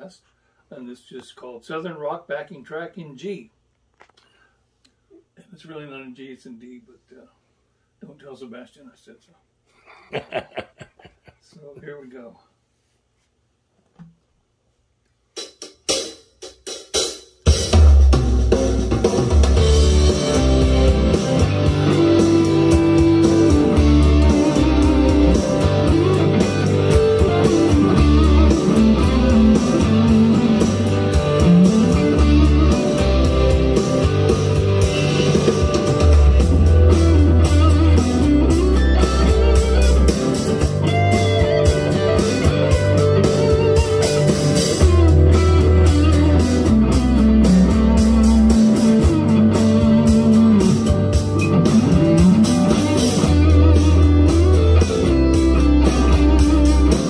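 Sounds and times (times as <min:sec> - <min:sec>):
southern rock backing track: 0:15.4 - 0:57.0
electric guitar lead lines: 0:18.7 - 0:57.0.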